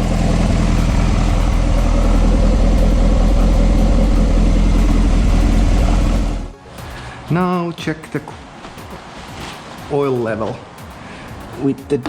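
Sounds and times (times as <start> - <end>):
car engine running steadily: 0.0 - 6.6.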